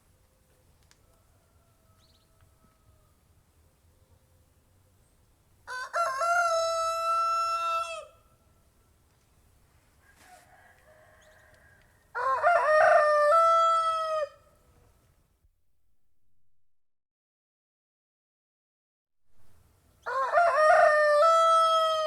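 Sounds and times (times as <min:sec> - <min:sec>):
rooster crowing: 0:01.0 - 0:03.2, 0:05.7 - 0:08.2, 0:10.0 - 0:14.5, 0:20.0 - 0:22.0.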